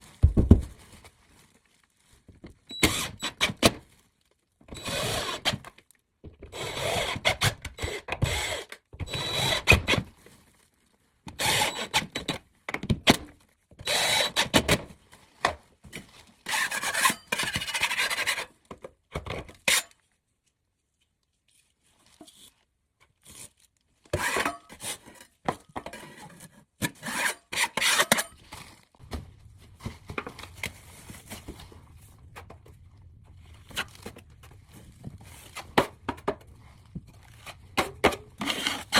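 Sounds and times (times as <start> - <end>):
hand tool rasping against drywall: 16.5 - 18.5, 26.9 - 28.3, 38.0 - 38.9.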